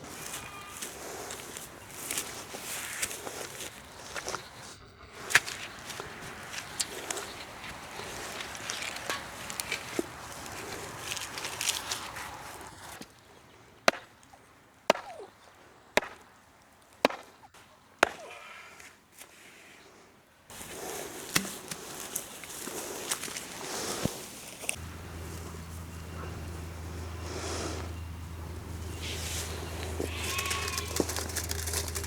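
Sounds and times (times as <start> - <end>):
clicky rustling outdoor sounds: 0.0 - 32.0
sharp chopping strikes: 13.9 - 14.1, 14.9 - 15.3, 16.0 - 16.2, 17.0 - 17.4, 18.0 - 18.3, 21.3 - 21.8.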